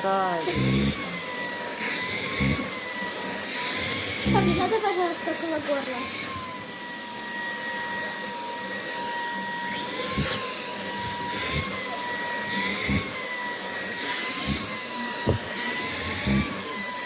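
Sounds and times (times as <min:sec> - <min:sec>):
vacuum cleaner whining: 0:00.0 - 0:17.0
soft thumps: 0:15.3 - 0:15.5.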